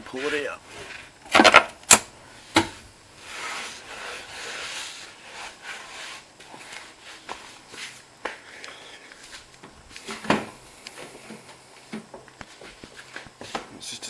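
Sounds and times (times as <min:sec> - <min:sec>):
rubbing and scuffing: 0:00.0 - 0:01.1, 0:03.2 - 0:08.5, 0:09.2 - 0:10.3, 0:11.0 - 0:13.7.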